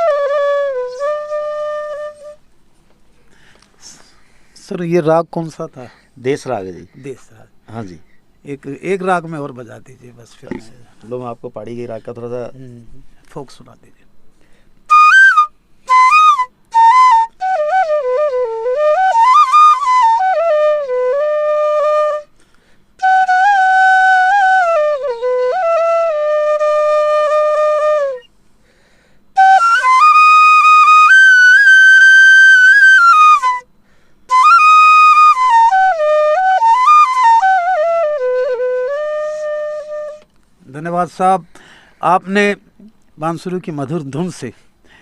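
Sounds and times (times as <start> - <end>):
bamboo flute folk melody: 0.0 - 2.5, 14.9 - 28.4, 29.3 - 40.4.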